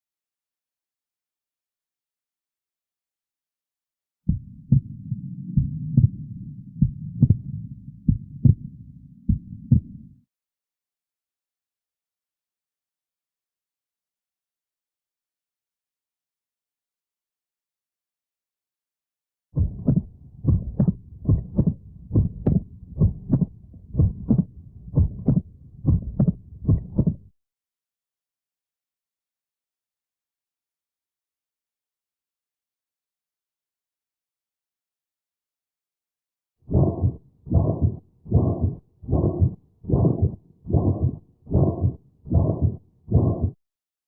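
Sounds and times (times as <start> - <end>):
heart murmur: 4.3 - 8.7, 9.3 - 10.0, 19.6 - 27.3, 36.7 - 43.6
heartbeat lub-dub: 4.3 - 8.7, 9.3 - 10.0, 19.6 - 27.3, 36.7 - 43.6.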